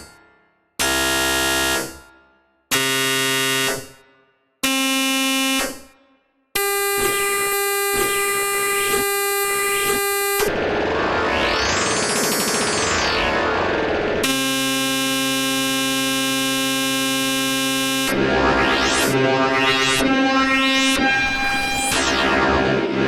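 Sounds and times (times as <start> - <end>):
synthesized dense midi music: 10.2 - 15.5, 17.2 - 23.0.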